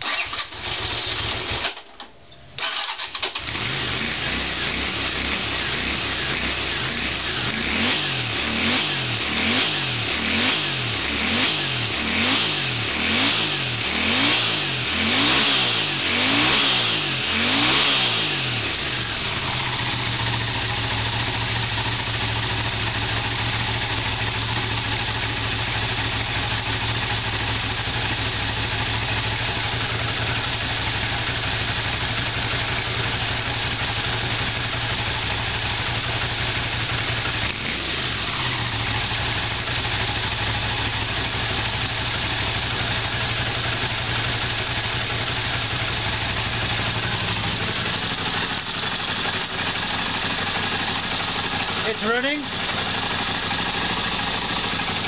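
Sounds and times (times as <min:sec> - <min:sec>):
motorcycle engine revving and idling: 0:00.0 - 0:02.0, 0:02.6 - 0:55.0.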